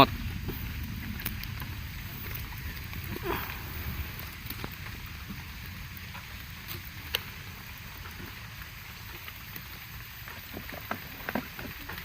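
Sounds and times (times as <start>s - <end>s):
low rumble: 0.0s - 9.2s
rain hissing: 0.0s - 12.0s.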